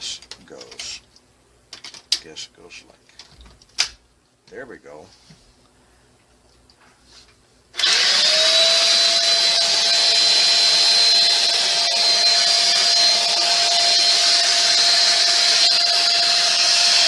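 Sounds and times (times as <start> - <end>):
vacuum cleaner motor whine: 7.8 - 17.0.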